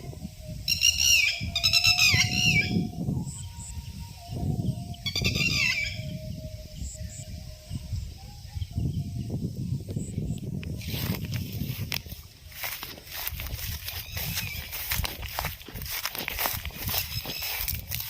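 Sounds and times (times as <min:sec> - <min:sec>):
bird calling: 0:05.0 - 0:06.2, 0:13.1 - 0:18.0.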